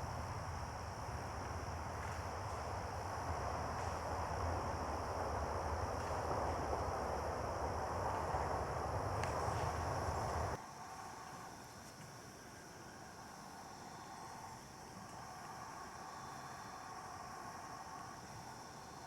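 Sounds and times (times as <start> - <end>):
steady rushing rumble: 0.0 - 10.6.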